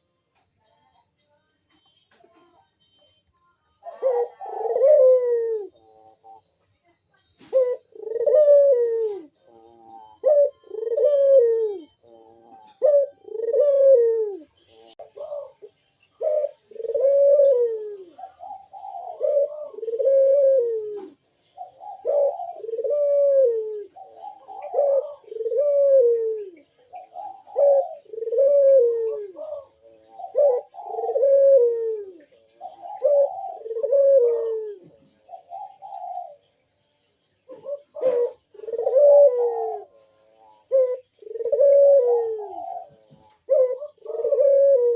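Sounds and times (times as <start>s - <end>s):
higher dove coo: 3.8s - 6.4s, 7.4s - 36.5s, 37.5s - 44.9s
doves cooing: 3.8s - 6.5s, 7.4s - 36.7s, 37.3s - 44.9s.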